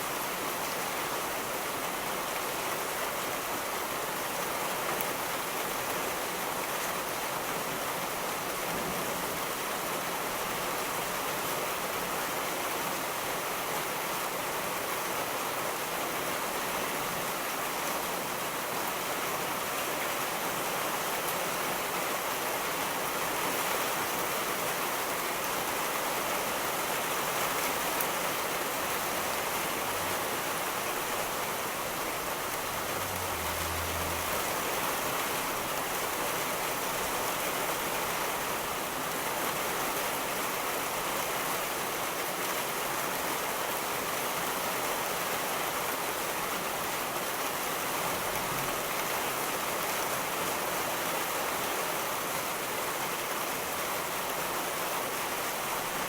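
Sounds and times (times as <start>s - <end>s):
heavy rain hissing: 27.3s - 38.0s.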